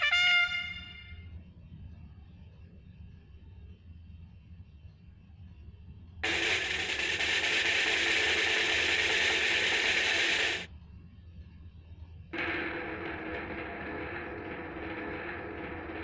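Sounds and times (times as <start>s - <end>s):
rapid mechanical ratcheting: 6.2s - 10.7s, 12.4s - 16.0s.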